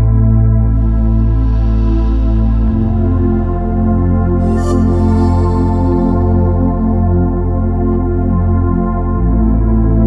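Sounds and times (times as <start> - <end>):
ambient synthesizer music: 0.0 - 10.0.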